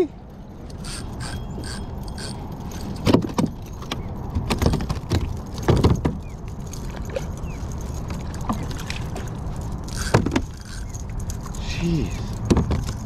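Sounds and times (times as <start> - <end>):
fishing reel clicking: 0.7 - 2.4, 9.8 - 12.3.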